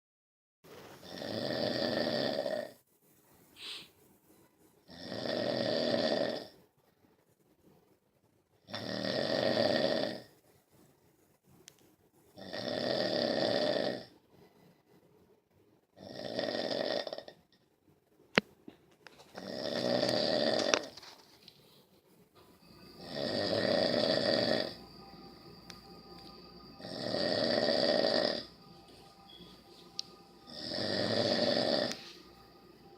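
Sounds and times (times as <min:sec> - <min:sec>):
person snoring: 0:01.0 - 0:02.8, 0:04.9 - 0:06.6, 0:08.7 - 0:10.3, 0:12.4 - 0:14.1, 0:16.0 - 0:17.4, 0:19.3 - 0:21.0, 0:22.6 - 0:32.9.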